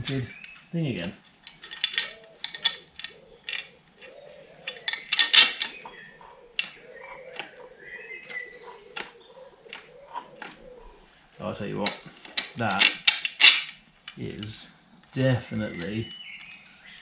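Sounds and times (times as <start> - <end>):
hand tools clinking on metal: 0.0 - 7.6, 11.8 - 14.6.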